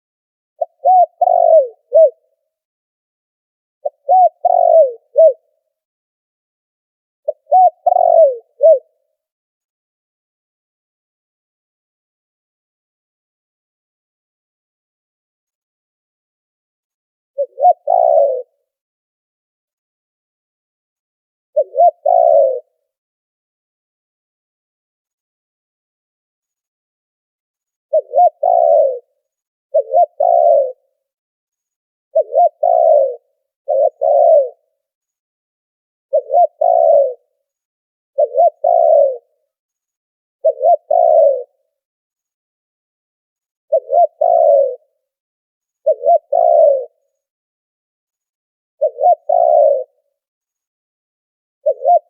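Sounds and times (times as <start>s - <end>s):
dove cooing: 0.6s - 2.3s, 3.8s - 5.5s, 7.3s - 9.0s, 17.4s - 18.6s, 21.6s - 22.7s, 27.9s - 29.2s, 29.8s - 30.8s, 32.2s - 34.6s, 36.1s - 37.3s, 38.2s - 39.3s, 40.4s - 41.6s, 43.7s - 44.9s, 45.8s - 47.0s, 48.8s - 50.0s, 51.6s - 52.0s.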